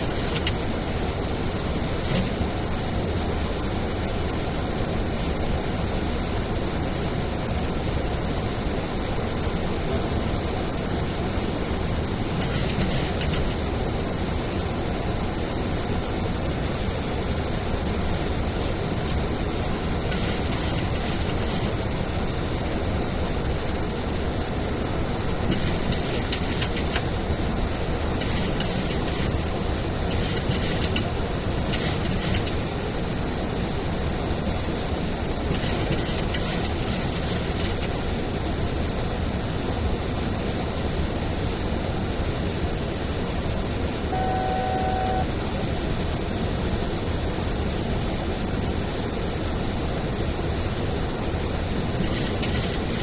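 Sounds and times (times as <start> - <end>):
engine drone: 0.0 - 53.0
rush of airflow: 0.0 - 53.0
crackly noise: 19.0 - 21.8, 28.1 - 32.6, 51.9 - 53.0
short electronic tone: 44.1 - 45.4.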